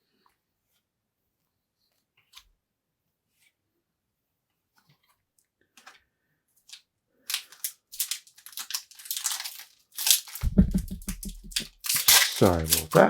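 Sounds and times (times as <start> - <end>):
foil wrapper crinkling and tearing: 6.7 - 10.5, 11.1 - 13.0.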